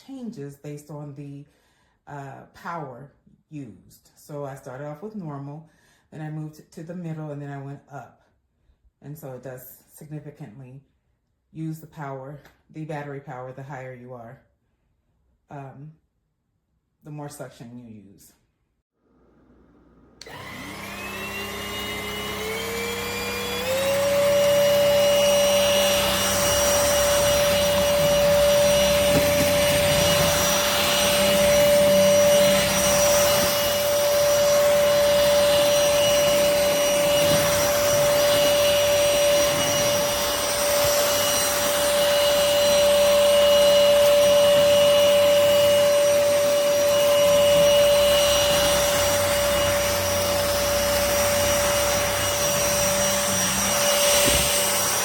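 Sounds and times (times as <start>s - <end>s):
vacuum motor whine: 19.0s - 55.0s.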